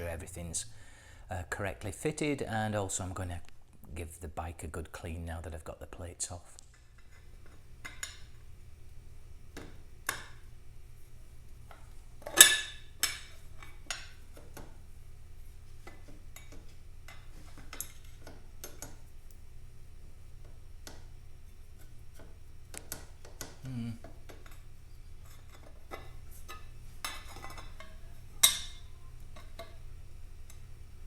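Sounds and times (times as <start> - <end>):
metal tools clinking and knocking: 12.2 - 14.2, 24.3 - 29.8.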